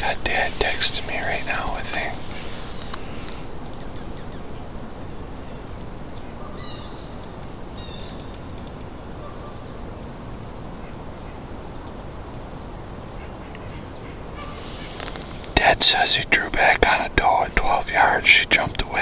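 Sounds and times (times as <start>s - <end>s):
distant bird calls: 0.0s - 19.0s.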